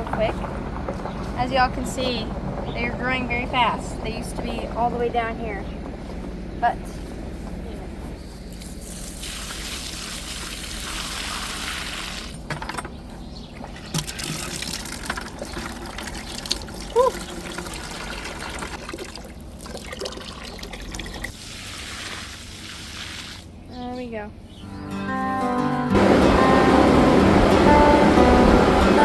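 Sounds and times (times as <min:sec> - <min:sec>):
water running and splashing: 0:08.6 - 0:12.4, 0:13.6 - 0:23.5.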